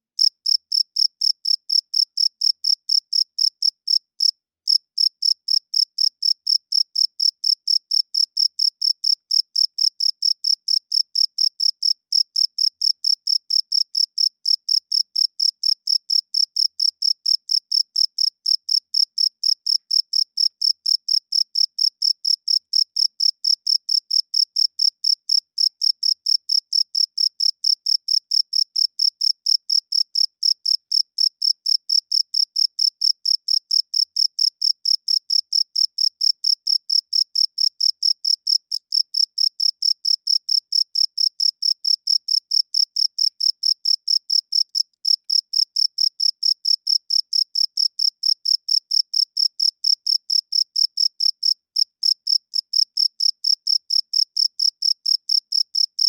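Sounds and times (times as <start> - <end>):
cricket chirping: 0.2 - 56.0.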